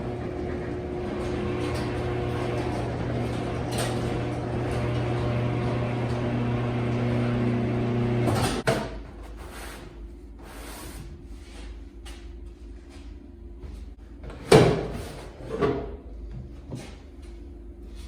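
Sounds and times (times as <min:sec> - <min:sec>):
steady machine hum: 0:00.0 - 0:08.6.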